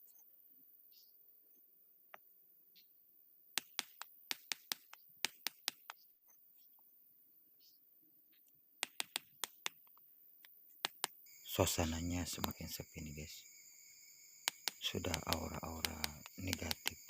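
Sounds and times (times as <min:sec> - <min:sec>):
paving blocks clacking: 0:14.5 - 0:17.0.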